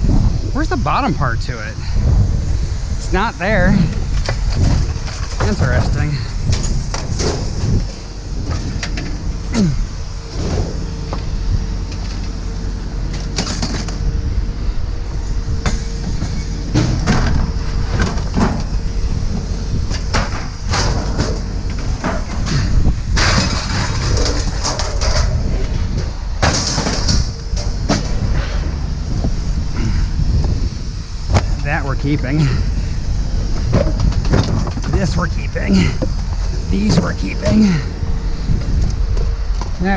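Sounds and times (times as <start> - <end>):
low machinery rumble: 0.0 - 39.9
scrap metal clanking: 19.9 - 29.2.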